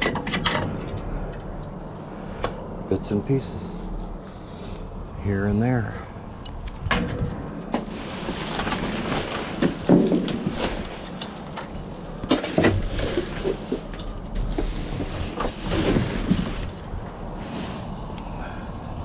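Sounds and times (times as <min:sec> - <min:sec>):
junk rustling and scraping in dumpster: 0:00.0 - 0:01.3, 0:06.6 - 0:18.1
wind noise on microphone: 0:04.8 - 0:07.8.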